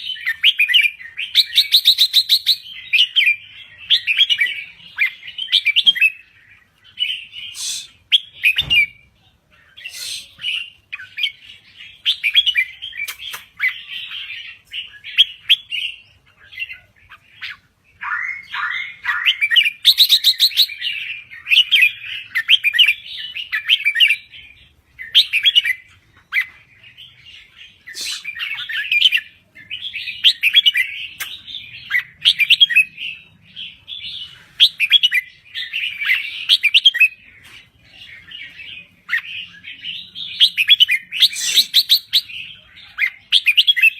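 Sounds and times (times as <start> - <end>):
bird warbling whistles: 7.4 - 9.0, 9.9 - 10.7, 17.4 - 20.8, 27.9 - 28.8, 40.5 - 42.3.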